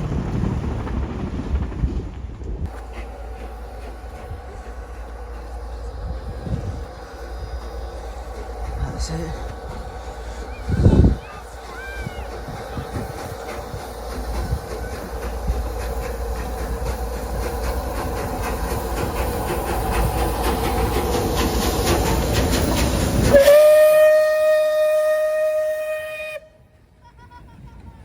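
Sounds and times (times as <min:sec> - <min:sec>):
steam train running past: 0:00.0 - 0:28.0
steam locomotive whistle: 0:23.2 - 0:26.7.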